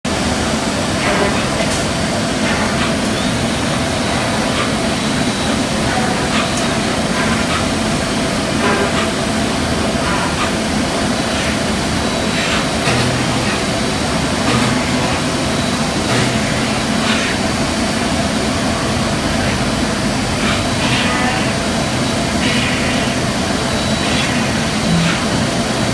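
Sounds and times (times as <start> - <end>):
machine drone with high whine: 0.1 - 25.9.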